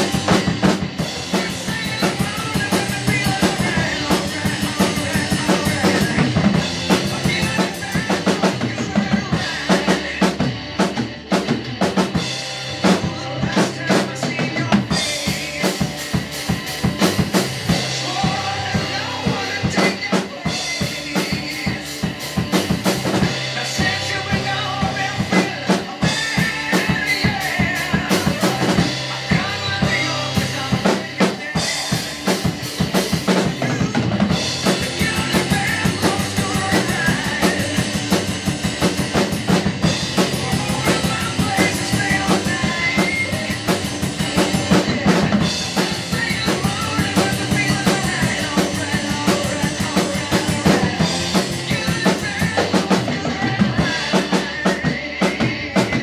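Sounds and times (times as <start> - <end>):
hard rock recording: 0.0 - 56.0
rock drum kit: 0.0 - 56.0.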